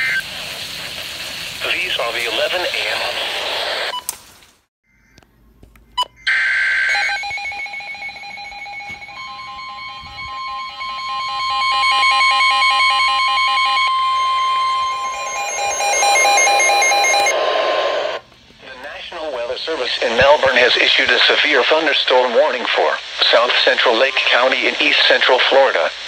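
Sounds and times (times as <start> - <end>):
pulsing alarm beeps: 6.0 - 17.4
long steady warning tone: 6.1 - 18.2
digital data screech: 9.1 - 18.1.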